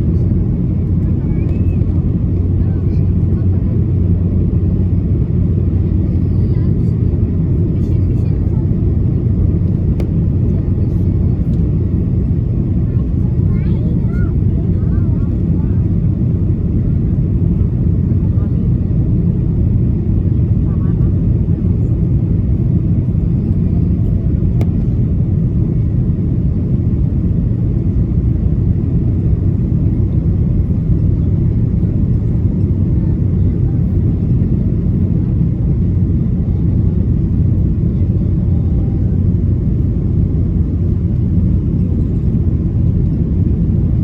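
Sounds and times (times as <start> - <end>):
aircraft cabin engine rumble: 0.0 - 44.0
faint click: 24.6 - 24.8.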